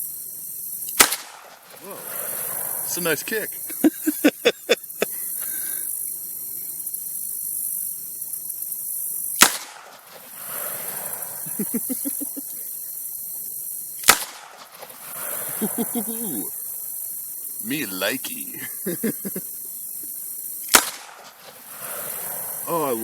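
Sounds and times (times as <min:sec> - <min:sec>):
revolver gunshots: 0:01.0 - 0:02.5, 0:09.4 - 0:10.0, 0:14.0 - 0:14.6, 0:20.7 - 0:22.2.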